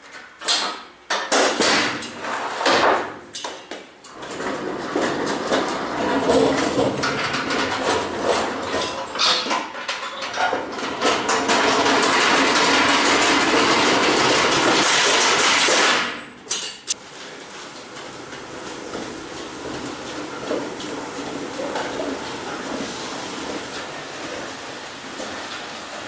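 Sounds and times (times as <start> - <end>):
metal knocks and clatter: 0.4 - 17.0
loud metal rattle: 10.1 - 16.9.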